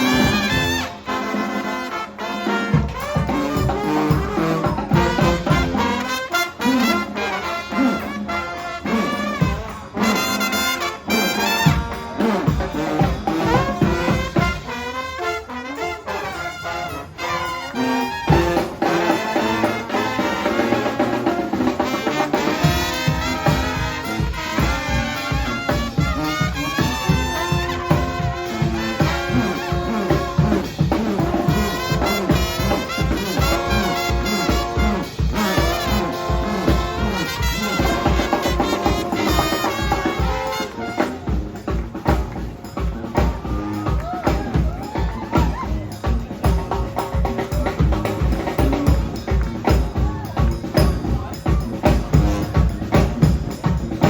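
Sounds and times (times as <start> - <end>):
steady drum beat: 0.0 - 8.3, 8.9 - 15.2, 18.0 - 54.0
brass band playing: 0.0 - 54.0.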